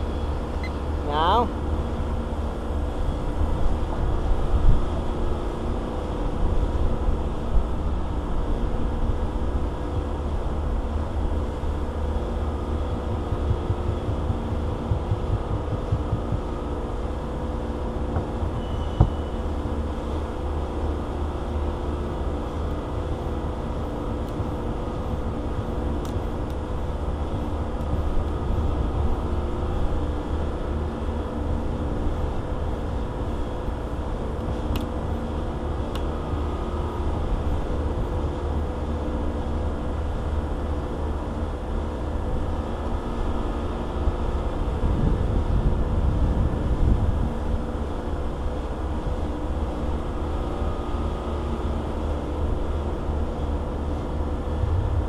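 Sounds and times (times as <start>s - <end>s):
steady mechanical drone: 0.0s - 55.0s
low rumble: 54.2s - 55.0s.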